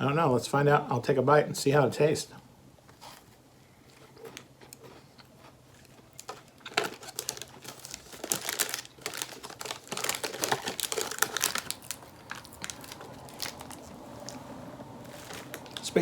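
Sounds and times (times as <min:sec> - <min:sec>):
biscuit crackling and crunching: 0:03.9 - 0:16.0.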